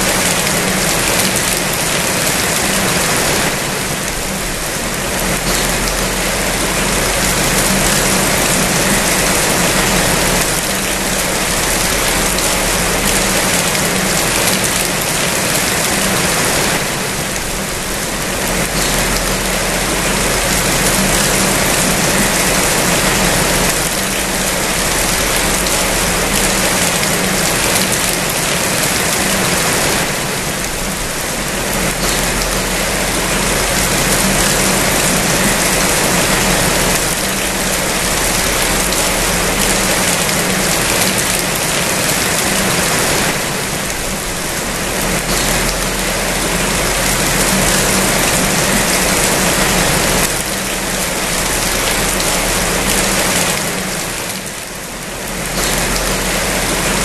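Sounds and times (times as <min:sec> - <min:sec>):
steady rain falling: 0:00.0 - 0:57.0
low steady hum: 0:03.6 - 0:14.4, 0:16.7 - 0:27.7.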